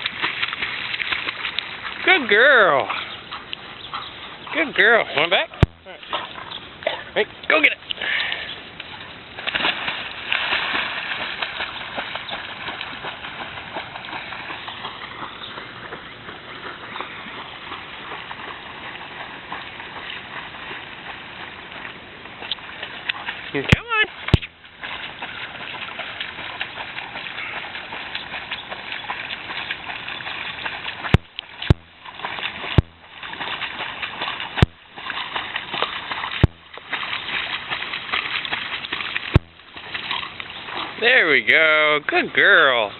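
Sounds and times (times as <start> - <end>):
dog splashing in water: 0.0 - 42.9
rhythmic paddling splashes: 0.0 - 42.9
sharp clicks: 24.3 - 24.6.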